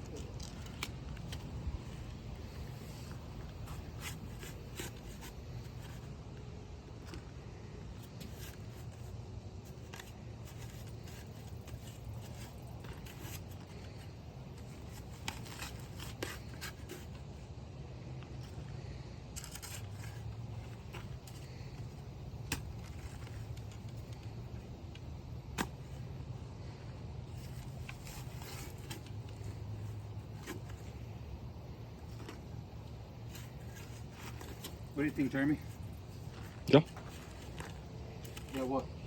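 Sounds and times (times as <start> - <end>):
steady low hum: 0.0 - 39.0
hands scraping in soil: 18.4 - 38.9.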